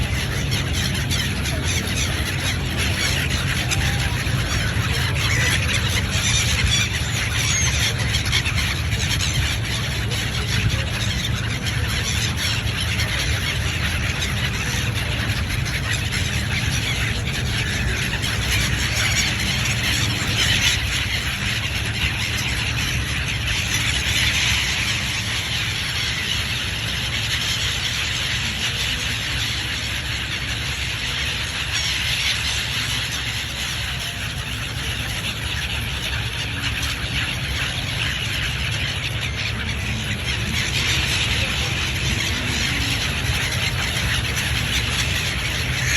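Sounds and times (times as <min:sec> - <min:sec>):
flock of birds calling: 0:00.0 - 0:45.9.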